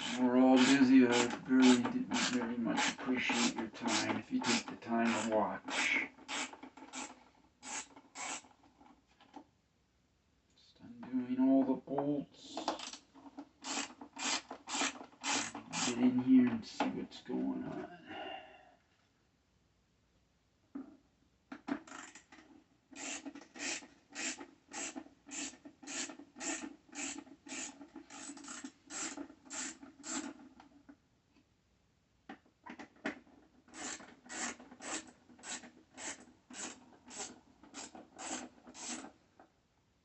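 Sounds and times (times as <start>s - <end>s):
ratchet wrench pawl rasping: 0.0s - 8.5s, 13.6s - 16.0s, 23.0s - 30.4s, 33.7s - 39.1s.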